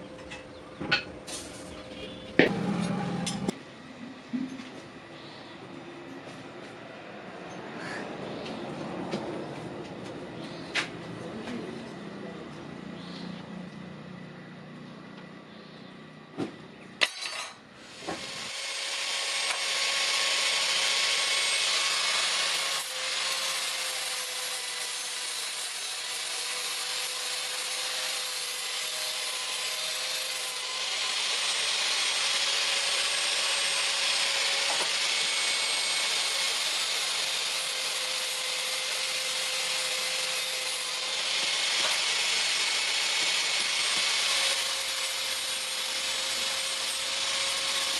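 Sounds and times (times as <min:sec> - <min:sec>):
power grinder on steel: 0:02.4 - 0:03.6, 0:17.3 - 0:47.9.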